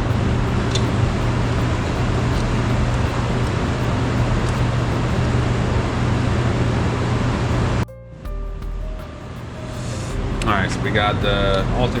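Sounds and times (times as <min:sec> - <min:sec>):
low hum: 0:00.0 - 0:12.0
rushing noise: 0:08.7 - 0:11.8.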